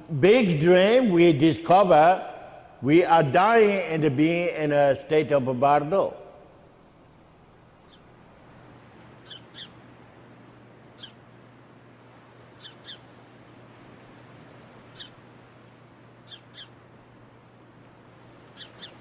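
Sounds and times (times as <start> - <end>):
low steady hum: 0.0 - 19.0
faint bird chirps: 9.2 - 9.8, 11.0 - 11.2, 12.6 - 13.1, 14.9 - 15.2, 16.2 - 16.8, 18.6 - 19.0.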